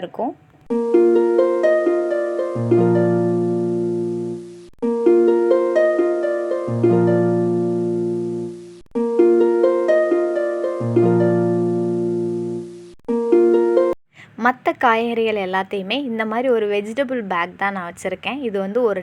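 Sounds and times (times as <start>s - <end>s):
harp-like plucked melody: 0.7s - 14.0s.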